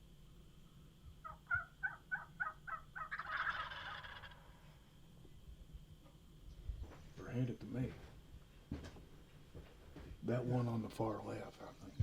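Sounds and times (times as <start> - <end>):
turkey yelps: 1.2 - 4.6
turkey gobble: 1.2 - 4.7.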